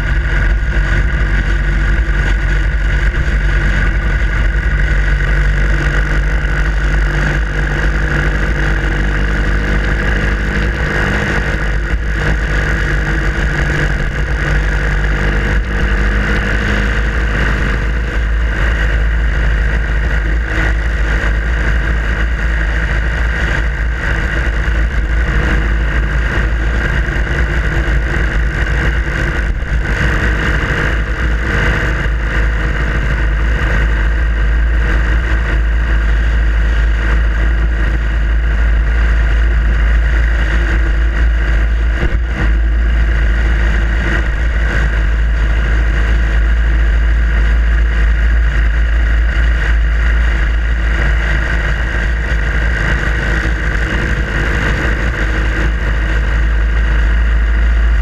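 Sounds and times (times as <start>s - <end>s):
motorcycle engine rumbling: 0.0s - 58.0s.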